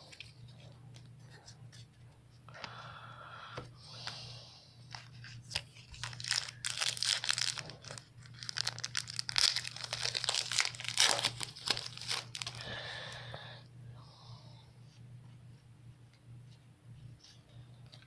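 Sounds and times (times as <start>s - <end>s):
foil wrappers crinkling and tearing: 4.9s - 12.7s.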